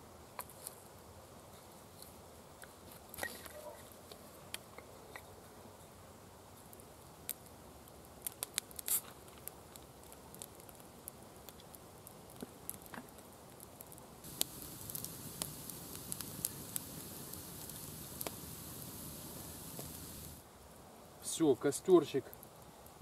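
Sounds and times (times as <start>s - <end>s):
campfire crackling and popping: 0.2s - 23.0s
fire hiss: 5.7s - 23.0s.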